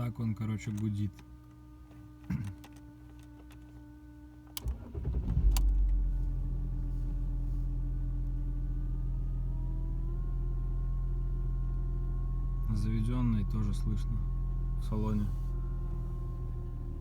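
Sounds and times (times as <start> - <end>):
fuel pump whine: 1.4 - 17.0
engine cranking and idling: 4.5 - 17.0.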